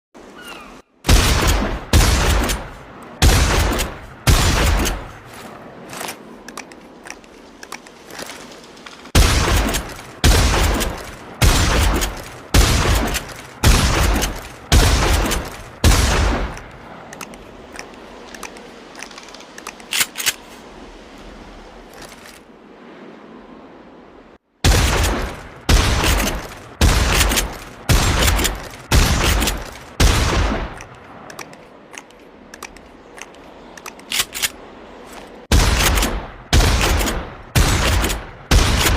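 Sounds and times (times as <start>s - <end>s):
shotgun blasts: 1.0s - 5.2s, 9.2s - 16.7s, 24.6s - 30.9s, 35.5s - 38.9s
small sharp clicks: 16.5s - 20.4s, 30.6s - 36.1s.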